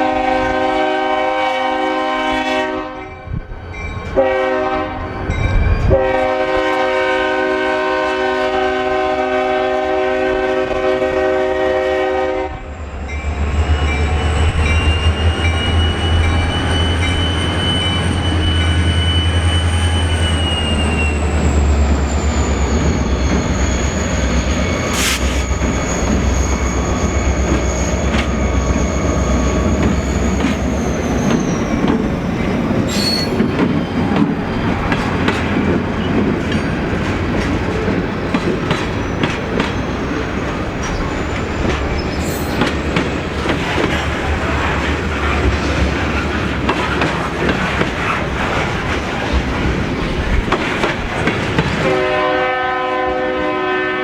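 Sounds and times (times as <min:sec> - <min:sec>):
locomotive air horn: 0:00.0 - 0:03.1, 0:04.2 - 0:05.1, 0:05.9 - 0:12.7, 0:24.7 - 0:25.6, 0:51.8 - 0:54.0
train engine rumble: 0:00.0 - 0:53.4
high wheel squeal: 0:12.7 - 0:35.2, 0:38.7 - 0:49.6.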